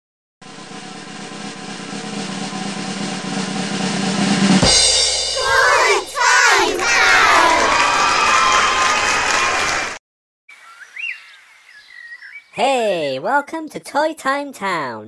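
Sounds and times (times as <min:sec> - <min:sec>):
snare drum roll: 0:00.4 - 0:08.0
crowd cheering and shouting: 0:05.4 - 0:10.0.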